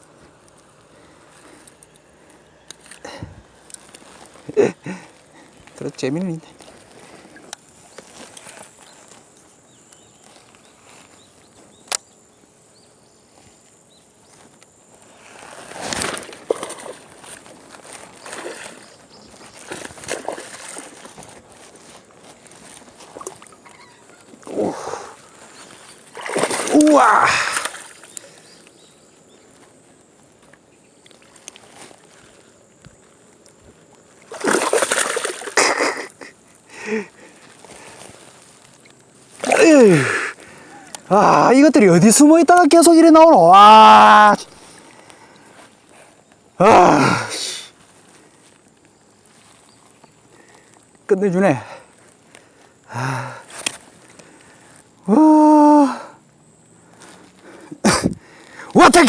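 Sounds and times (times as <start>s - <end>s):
faint water sounds: 0.0s - 59.0s
water splashing and sloshing: 15.4s - 24.5s, 25.1s - 28.4s, 33.4s - 36.6s
faint bird chirps: 23.2s - 26.2s
fish splashing at surface: 25.8s - 28.0s, 34.3s - 35.6s.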